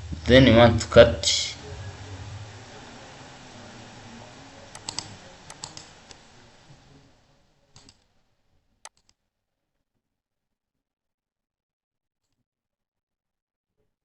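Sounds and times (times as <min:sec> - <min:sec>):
faint hiss: 0:00.0 - 0:08.2
mouse and keyboard clicks: 0:04.7 - 0:05.9.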